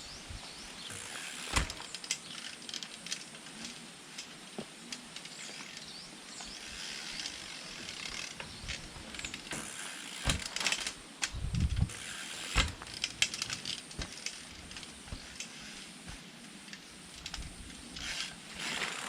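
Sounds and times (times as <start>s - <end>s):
bike rattling clicks: 0.8s - 19.0s
freewheel hub ratcheting clicks: 0.9s - 4.3s, 4.9s - 19.0s
rough hiss: 9.1s - 19.0s.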